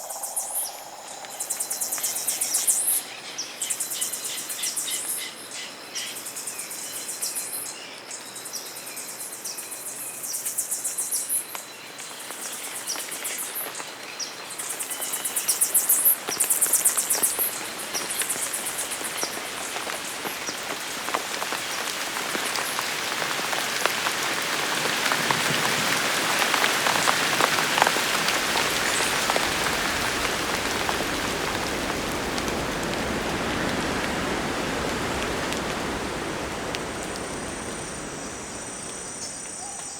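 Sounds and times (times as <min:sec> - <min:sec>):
insect chorus buzzing: 0:00.0 - 0:07.6, 0:27.4 - 0:39.9
steady rain: 0:00.0 - 0:39.9.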